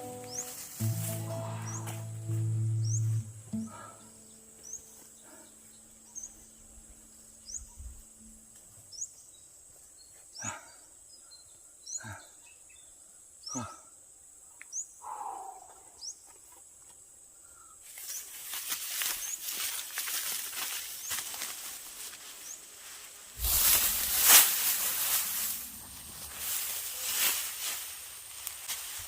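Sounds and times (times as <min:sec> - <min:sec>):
high rising chirp: 0:00.0 - 0:05.0
steady high hiss: 0:00.0 - 0:08.8, 0:17.8 - 0:29.0.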